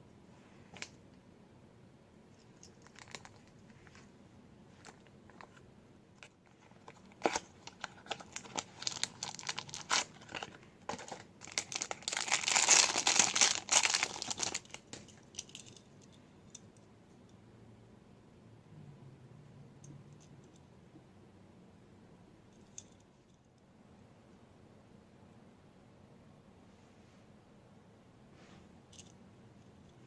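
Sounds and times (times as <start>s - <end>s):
toy packaging crinkling: 2.5s - 3.6s, 6.2s - 15.8s.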